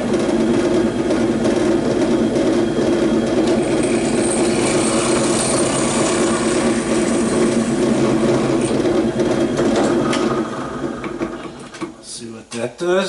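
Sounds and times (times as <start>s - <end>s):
electric drill running: 3.4s - 11.2s.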